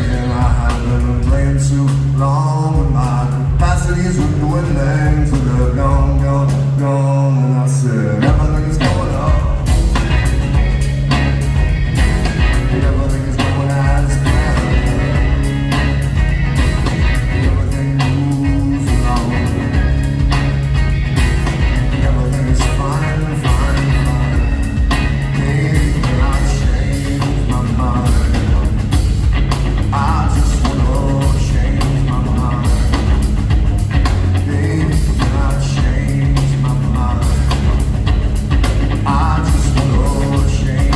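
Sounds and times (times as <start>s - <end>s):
person singing: 0.0s - 11.1s, 12.2s - 20.7s, 21.4s - 29.1s, 29.8s - 38.2s, 38.9s - 40.9s
bass line: 0.0s - 40.9s
guitar: 0.0s - 40.9s
drum hits: 8.3s - 40.9s.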